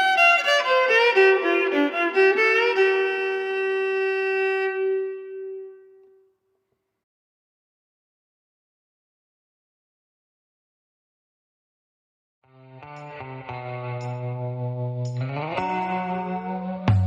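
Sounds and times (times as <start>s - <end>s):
instrumental background music: 12.5s - 17.0s.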